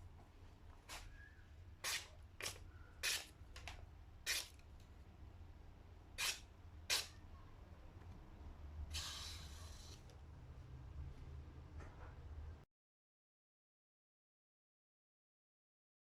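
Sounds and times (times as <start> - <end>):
short sharp scraping strokes: 8.9 - 10.0.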